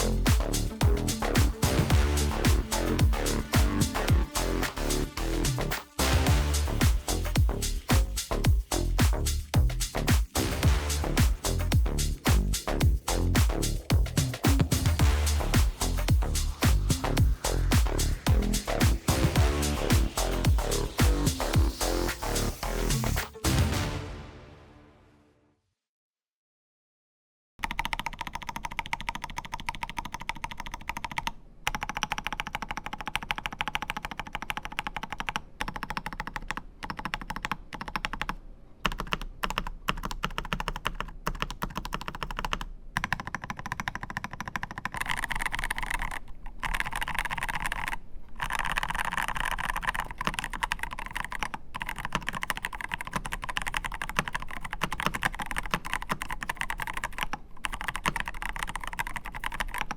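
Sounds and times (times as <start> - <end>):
mechanical keyboard typing: 27.6 - 59.9.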